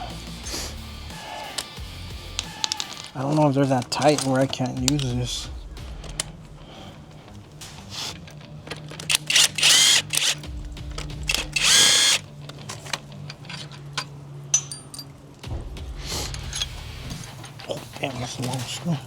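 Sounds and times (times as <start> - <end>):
power drill whining: 9.1 - 12.3.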